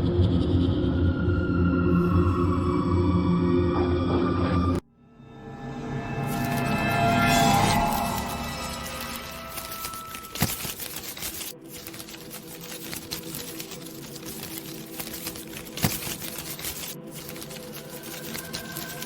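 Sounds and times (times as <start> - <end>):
clicking and crackling: 7.5 - 19.0.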